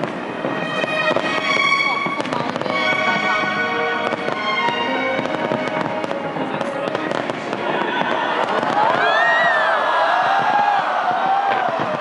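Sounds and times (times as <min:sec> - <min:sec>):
music playing: 0:00.0 - 0:08.8
fireworks bursting and crackling: 0:00.0 - 0:12.0.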